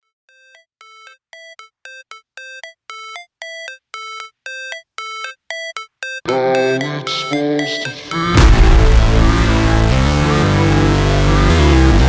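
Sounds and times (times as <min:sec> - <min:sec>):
bell-like synthesizer notes: 0:06.2 - 0:12.0.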